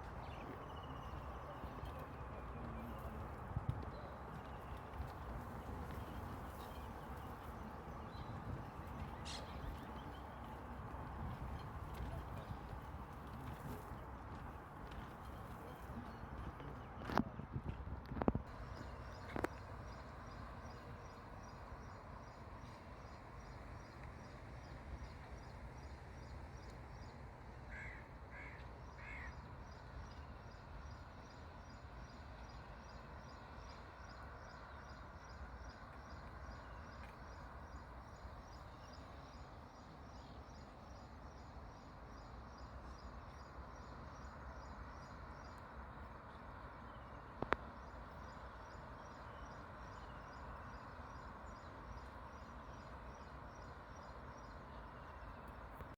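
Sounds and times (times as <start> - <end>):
background hiss and rumble: 0.0 - 55.9
bird calls: 9.0 - 10.7.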